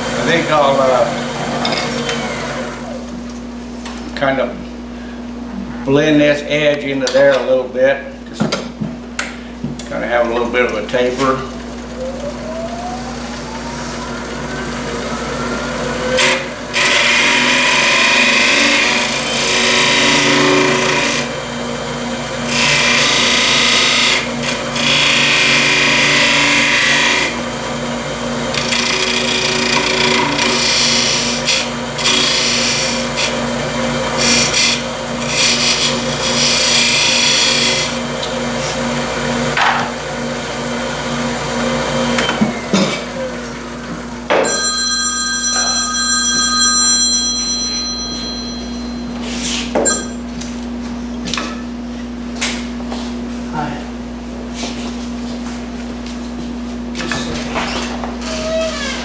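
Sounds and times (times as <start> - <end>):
turning tool cutting wood: 0.0 - 3.2, 9.8 - 44.4
wood lathe humming: 0.0 - 3.8, 9.7 - 51.1, 58.0 - 59.0.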